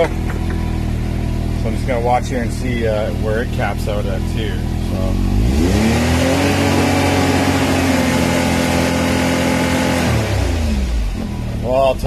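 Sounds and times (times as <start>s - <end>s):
clutch rattle: 0.0s - 1.3s
engine revving: 0.0s - 12.0s.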